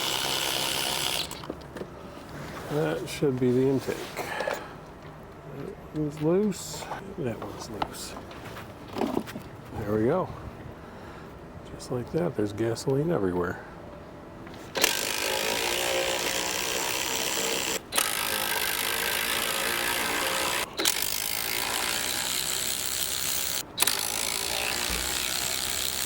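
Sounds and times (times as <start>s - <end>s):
power tool removing bolts: 0.0s - 1.6s, 14.7s - 26.0s.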